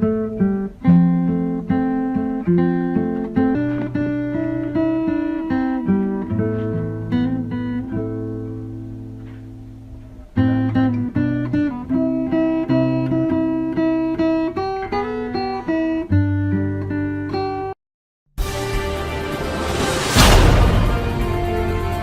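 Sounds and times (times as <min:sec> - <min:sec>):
acoustic guitar music: 0:00.0 - 0:17.8, 0:18.4 - 0:22.0
second music piece: 0:18.4 - 0:22.0.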